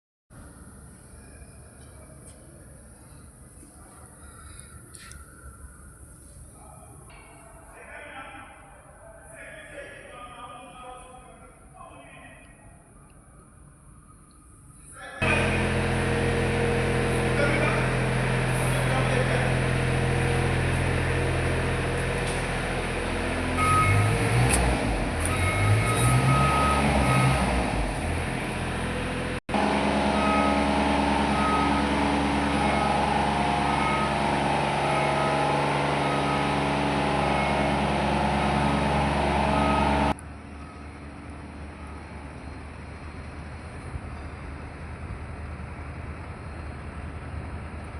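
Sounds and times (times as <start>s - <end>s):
heavy machinery humming: 15.2s - 47.9s.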